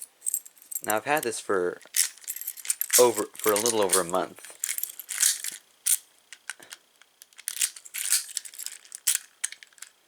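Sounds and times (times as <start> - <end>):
metal keys clinking: 0.0 - 1.3, 1.9 - 6.0, 7.4 - 10.0.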